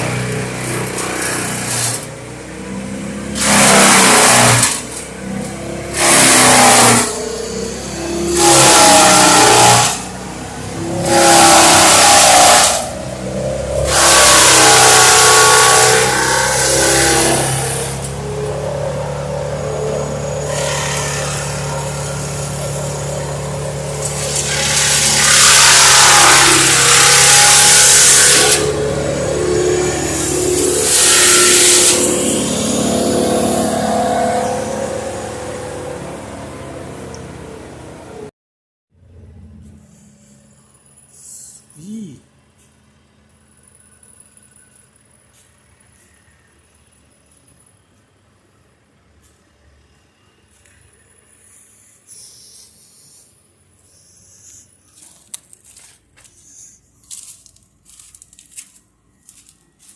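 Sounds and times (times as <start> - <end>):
wood chipper engine humming: 0.0 - 38.3, 53.8 - 59.9
branches being chipped: 54.3 - 59.9.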